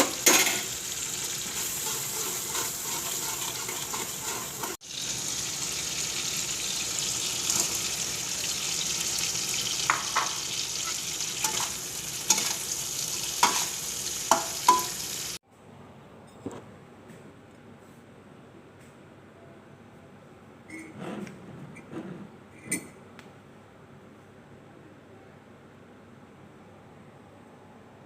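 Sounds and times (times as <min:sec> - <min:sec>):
utensil clinking and scraping pan: 0:00.0 - 0:00.8, 0:01.4 - 0:04.8, 0:09.8 - 0:12.7, 0:13.4 - 0:15.0
food sizzling in hot oil: 0:00.0 - 0:15.4.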